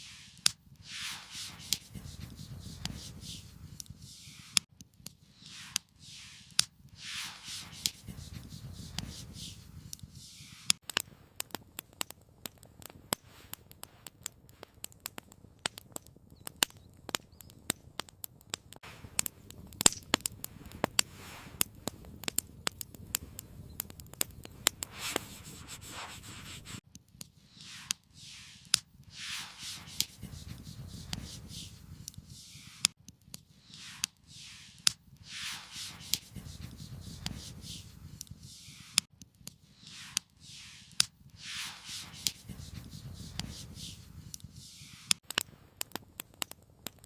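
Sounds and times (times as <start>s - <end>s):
campfire crackling: 0.0s - 47.0s
soft rustling swishes: 0.8s - 4.6s, 7.0s - 10.7s, 24.8s - 26.8s, 29.1s - 32.9s, 33.7s - 39.0s, 39.8s - 45.1s.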